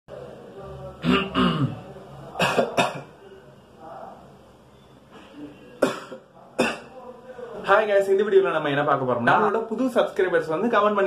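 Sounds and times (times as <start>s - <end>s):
person clearing throat: 1.0s - 1.8s, 2.4s - 3.1s, 5.8s - 6.9s
person coughing: 1.0s - 1.8s, 5.8s - 6.9s.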